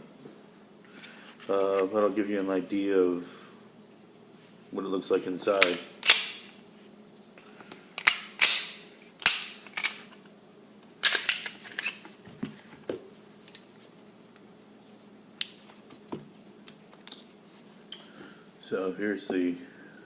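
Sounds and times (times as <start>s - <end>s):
metallic clacks of pistol handling: 5.6s - 6.5s, 8.0s - 10.2s.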